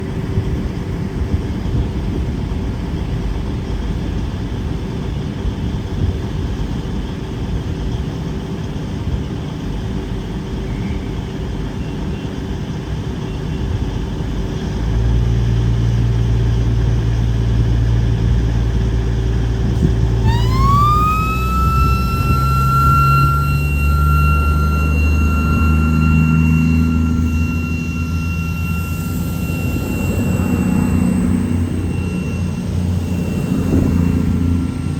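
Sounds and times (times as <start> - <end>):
diesel train engines droning: 0.0 - 34.9
loud rising whine: 14.7 - 34.9.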